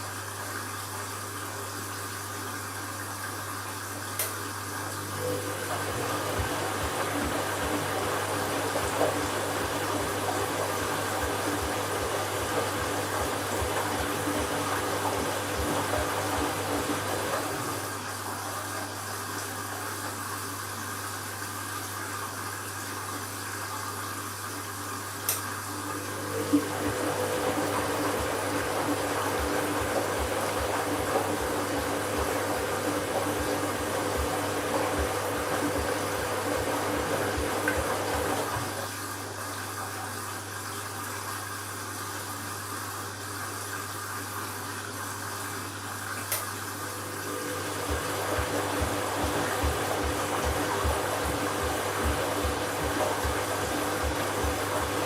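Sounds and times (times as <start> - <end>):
washing machine hum: 0.0 - 55.0
water splashing in washing machine drum: 5.0 - 18.5, 25.9 - 40.9, 46.2 - 55.0.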